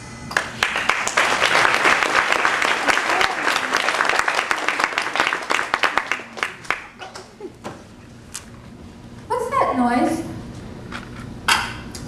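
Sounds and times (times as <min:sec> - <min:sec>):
audience applauding: 0:00.4 - 0:07.3.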